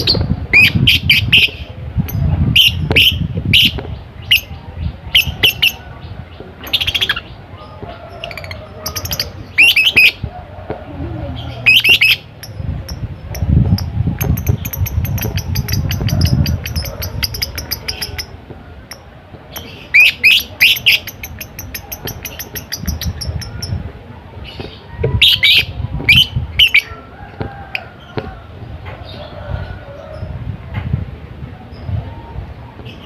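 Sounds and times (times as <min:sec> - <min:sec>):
lovebird chattering chirps: 0:08.1 - 0:10.2, 0:11.6 - 0:23.8.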